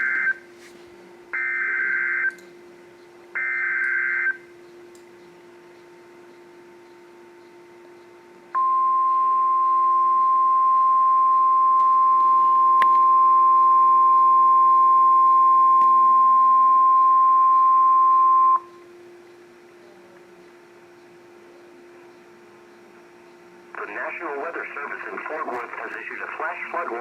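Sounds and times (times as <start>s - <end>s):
faint receiver hum: 0.0s - 27.0s
steady alarm tone: 1.4s - 2.4s, 3.4s - 4.5s, 8.6s - 18.8s.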